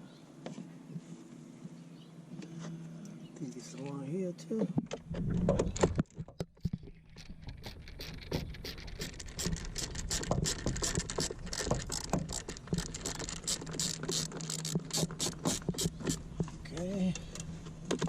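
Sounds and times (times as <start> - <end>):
steady low hum: 6.7 - 18.0
tool clicks and scrapes on screws: 7.2 - 16.2.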